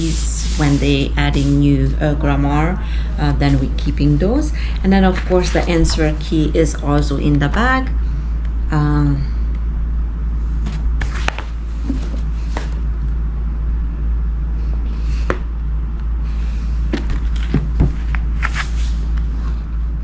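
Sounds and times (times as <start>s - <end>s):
steady low rumble: 0.0s - 20.0s
workbook pages rustling: 5.0s - 6.2s, 10.7s - 12.8s, 17.0s - 19.2s.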